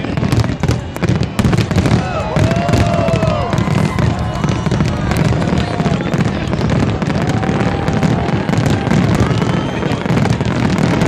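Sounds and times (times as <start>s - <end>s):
fireworks booming and crackling: 0.0s - 11.0s.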